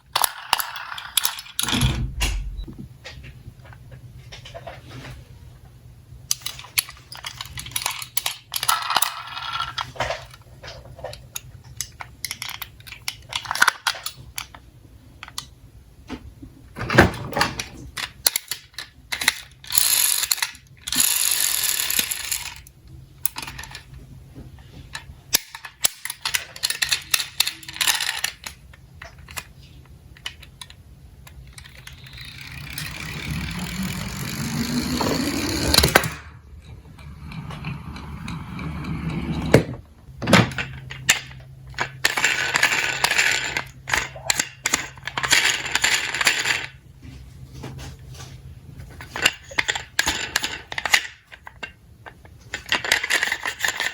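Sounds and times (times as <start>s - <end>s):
toy cars clattering: 0.0s - 1.6s, 6.3s - 14.6s, 17.2s - 24.0s, 24.9s - 36.3s, 40.4s - 46.8s, 48.9s - 53.9s
toy cars rolling on track: 0.0s - 1.6s, 6.3s - 11.2s, 17.4s - 23.9s, 25.0s - 29.5s, 30.2s - 36.3s, 37.0s - 39.7s, 40.6s - 46.8s, 49.1s - 53.9s.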